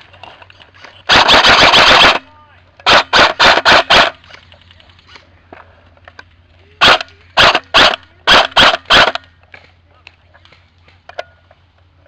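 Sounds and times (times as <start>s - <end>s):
airsoft rifle shots: 1.1s - 4.2s, 6.8s - 9.3s.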